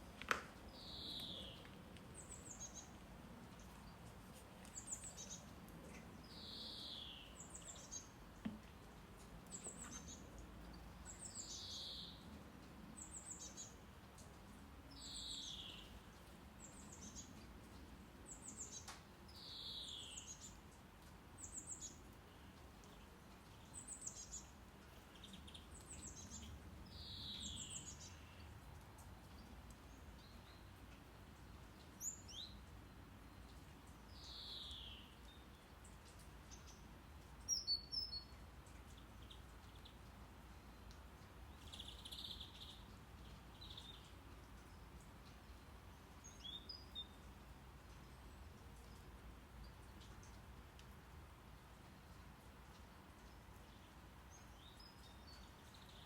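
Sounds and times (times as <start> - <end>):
low rumble of brown noise: 0.0 - 19.5
bird chirping: 0.7 - 3.0, 3.6 - 8.6, 22.8 - 28.6, 37.4 - 47.2.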